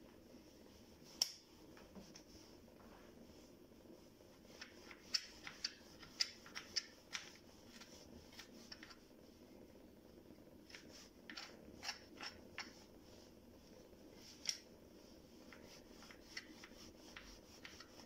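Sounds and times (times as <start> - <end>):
room hiss: 0.0 - 18.0
faint clicks and light taps: 1.2 - 2.9.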